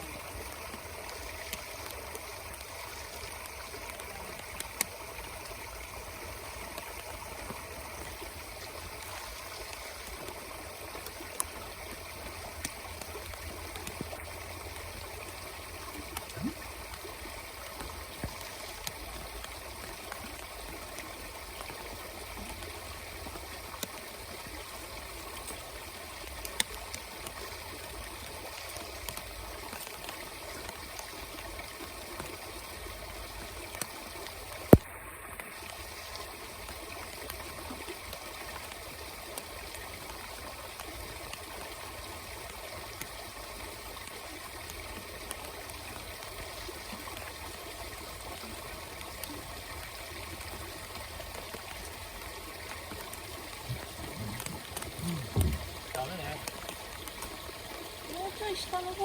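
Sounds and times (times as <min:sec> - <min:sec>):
water rushing: 0:47.4 - 0:59.0.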